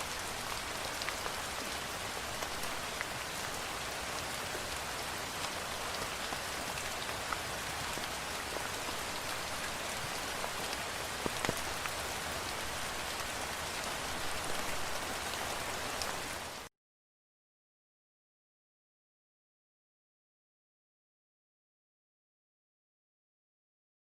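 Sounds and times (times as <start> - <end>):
raindrops ticking: 0.0 - 15.2
steady rain: 0.0 - 16.7.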